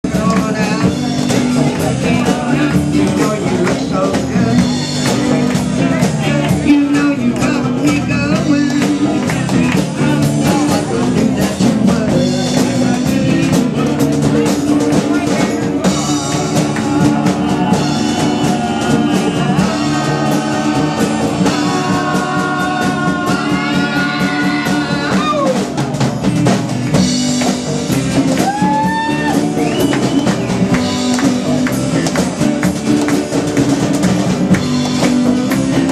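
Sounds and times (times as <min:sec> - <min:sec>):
person singing: 0:00.0 - 0:26.0
band playing: 0:00.0 - 0:35.9
drum kit: 0:00.0 - 0:35.9
guitar: 0:00.0 - 0:35.9.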